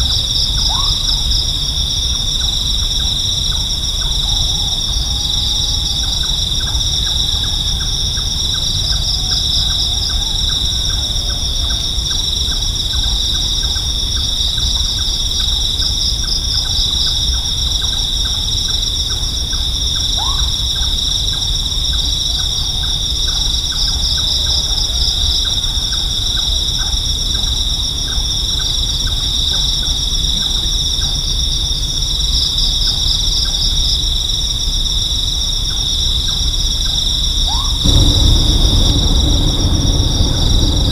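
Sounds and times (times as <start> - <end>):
insects trilling: 0.0 - 40.9
low rumble: 37.8 - 40.9.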